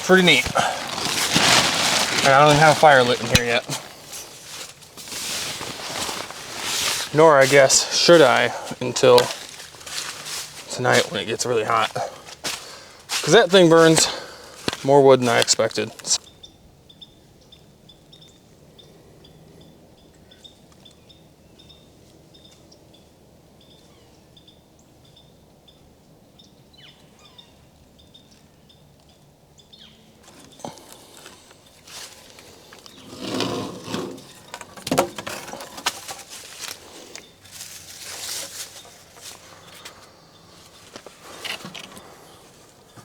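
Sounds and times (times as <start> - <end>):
rustling and knocks of handling: 0.0 - 16.2, 30.2 - 43.0
faint birds chirping: 0.0 - 43.0.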